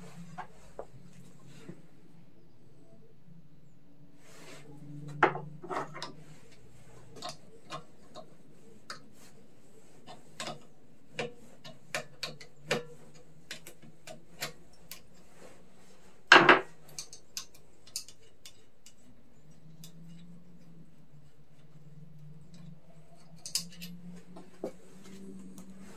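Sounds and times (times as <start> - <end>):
tools clicking and tapping: 5.1 - 9.3, 9.9 - 15.4, 16.3 - 25.7.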